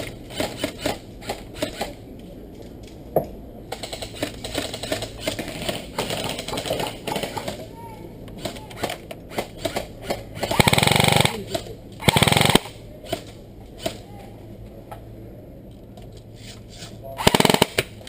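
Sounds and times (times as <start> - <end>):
airsoft gun full-auto bursts: 3.7 - 7.6, 8.4 - 11.4, 12.0 - 13.2, 17.2 - 18.0
airsoft gun single shots: 8.8 - 11.4.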